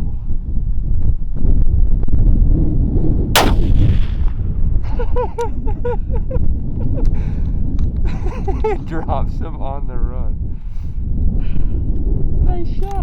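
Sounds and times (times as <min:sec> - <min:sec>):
wind rumble on microphone: 0:00.0 - 0:13.0
rifle shot with echo: 0:03.4 - 0:04.8.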